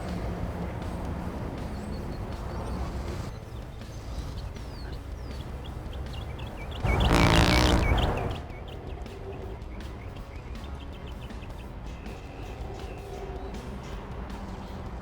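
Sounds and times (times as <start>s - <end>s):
low traffic rumble: 0.0s - 15.0s
small birds chirping: 0.0s - 15.0s
loud buzzy blast: 6.8s - 8.4s.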